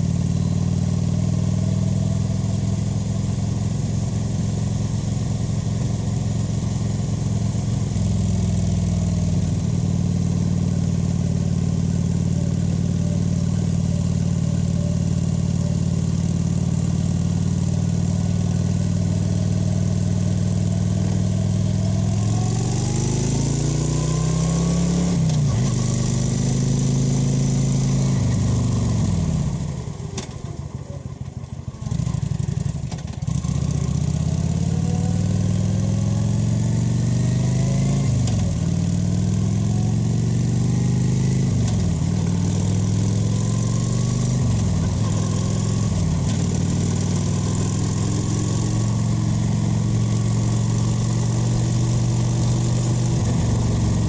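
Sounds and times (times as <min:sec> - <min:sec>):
motorcycle engine changing gear: 0:41.4 - 0:54.0.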